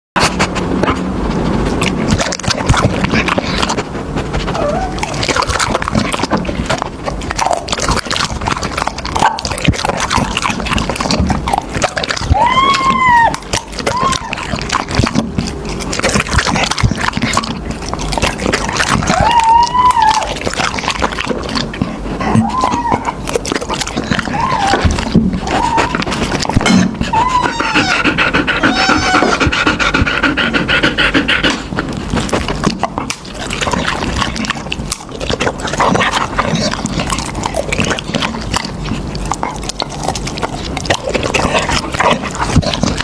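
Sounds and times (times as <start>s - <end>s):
dog chewing and crunching: 0.2s - 43.0s
rising and falling pitched calls: 27.1s - 29.4s.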